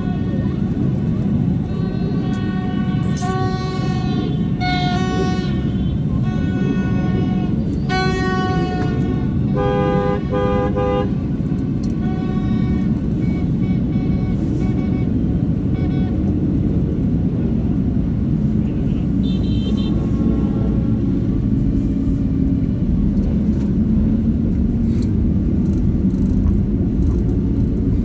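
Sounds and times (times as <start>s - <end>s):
traffic rumble: 0.0s - 28.0s
car horns honking: 1.5s - 16.3s, 18.6s - 20.4s.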